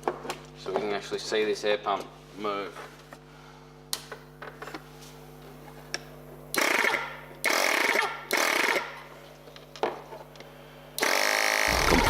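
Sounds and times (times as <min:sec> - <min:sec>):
air compressor running: 0:11.0 - 0:12.0.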